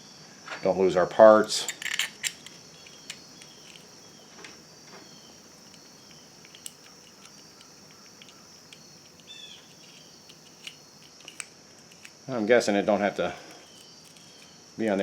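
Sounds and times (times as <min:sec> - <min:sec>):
faint high-pitched hiss: 0:00.0 - 0:15.0
small clicks and taps on plastic: 0:05.7 - 0:12.2.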